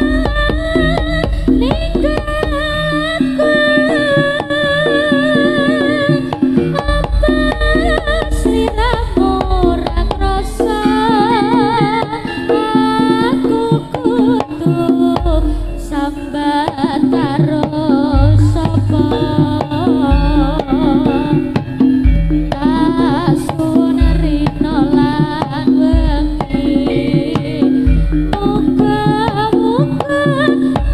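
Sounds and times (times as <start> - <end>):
gamelan: 0.0 - 30.9
hand drums: 0.0 - 30.9
person singing with vibrato: 0.0 - 30.9
deep low notes: 18.1 - 21.4.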